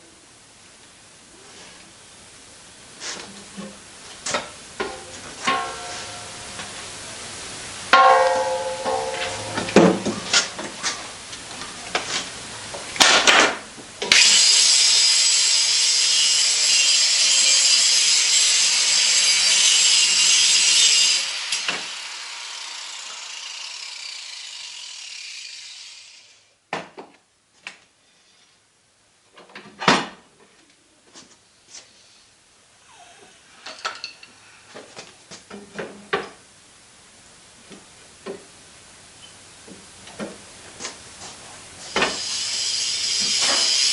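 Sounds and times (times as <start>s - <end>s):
power tool rasping on metal: 14.2s - 26.2s, 41.9s - 43.9s.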